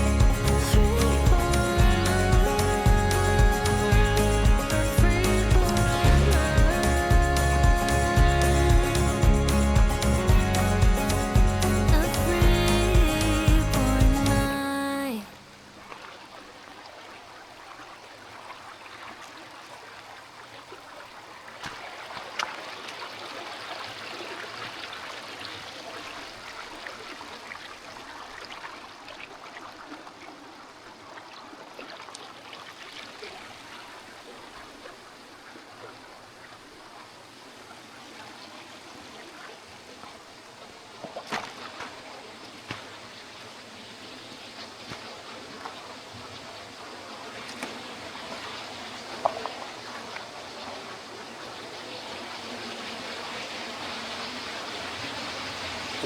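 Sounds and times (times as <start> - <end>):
water running over rocks: 0.0 - 56.0.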